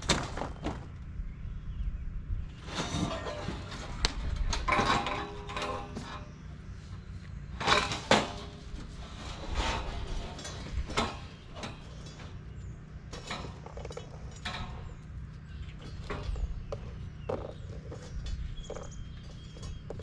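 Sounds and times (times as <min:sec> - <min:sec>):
steady low rumble: 0:00.8 - 0:20.0
sharp knocks and clatters: 0:09.6 - 0:20.0.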